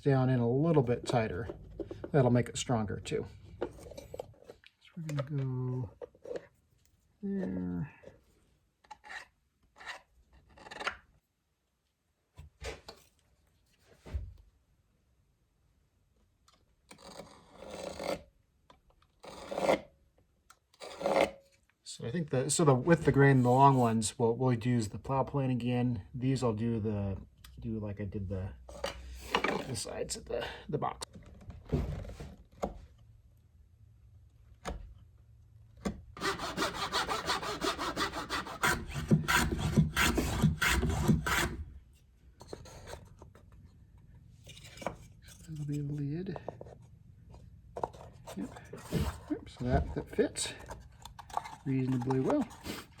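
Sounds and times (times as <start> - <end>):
hand tool rasping wood: 20.8 - 21.4, 36.2 - 41.7, 47.9 - 53.0.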